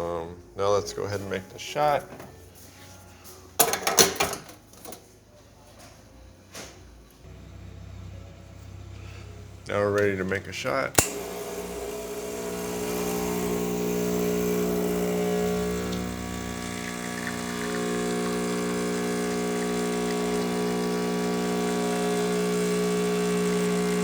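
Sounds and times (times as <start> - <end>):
espresso machine pump buzzing: 11.0 - 24.0.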